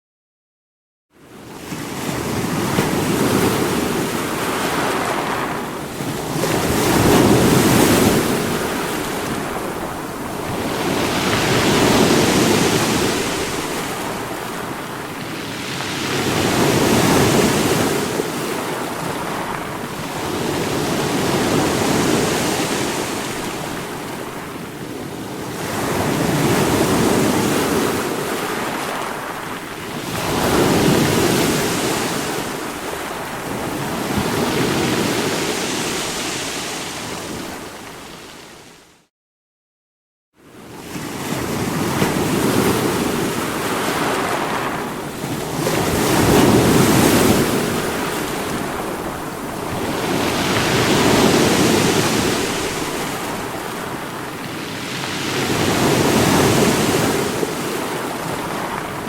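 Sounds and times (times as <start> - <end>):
ocean surf breaking: 1.7 - 24.6, 41.3 - 59.0.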